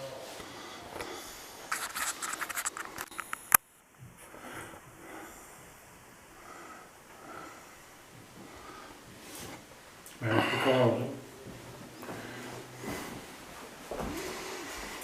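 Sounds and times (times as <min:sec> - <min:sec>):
scratching and rustling: 0:00.4 - 0:04.9.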